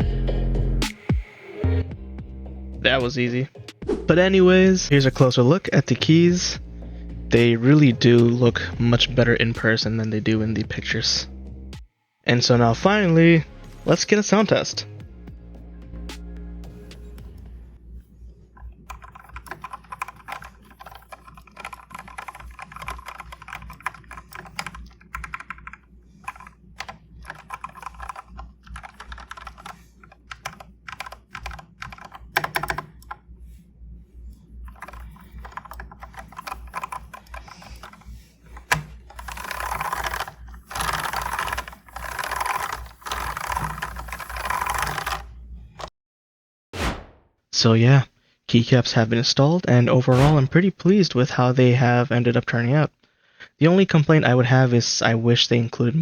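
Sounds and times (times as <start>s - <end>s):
mechanical keyboard typing: 18.9s - 33.2s, 34.7s - 45.3s.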